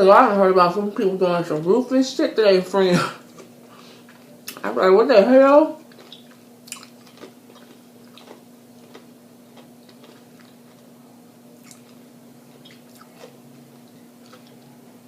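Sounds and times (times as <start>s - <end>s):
steady low hum: 0.0s - 15.0s
wet chewing mouth clicks: 5.9s - 10.8s, 11.6s - 12.0s.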